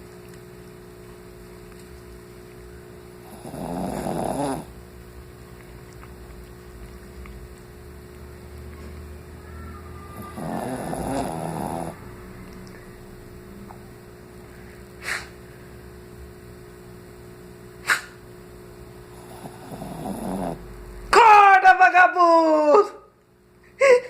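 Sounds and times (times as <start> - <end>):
person snoring: 3.2 - 4.7, 10.2 - 12.0, 19.1 - 20.6
brief sharp noises: 17.8 - 18.2.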